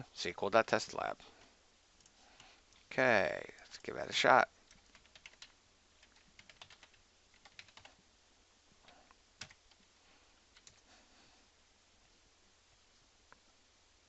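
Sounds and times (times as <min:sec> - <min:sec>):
keyboard typing: 0:04.6 - 0:08.0, 0:08.8 - 0:09.9, 0:10.5 - 0:10.9.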